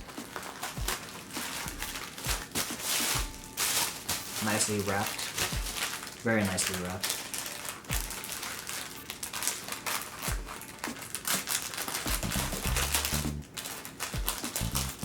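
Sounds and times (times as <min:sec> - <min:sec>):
background music kick drum: 0:00.0 - 0:01.0, 0:01.6 - 0:03.6, 0:05.4 - 0:05.9, 0:07.9 - 0:08.3, 0:10.2 - 0:10.6, 0:12.1 - 0:13.5, 0:14.1 - 0:15.0
wrapping crinkling and rustling: 0:00.0 - 0:15.0
bass line: 0:12.2 - 0:13.5, 0:14.6 - 0:15.0.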